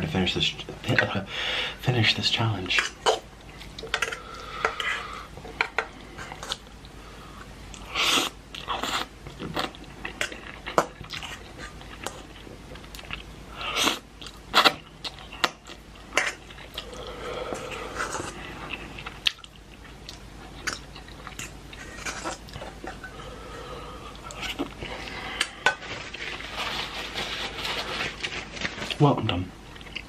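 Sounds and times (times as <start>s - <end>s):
chewing and mouth sounds: 7.7s - 23.1s.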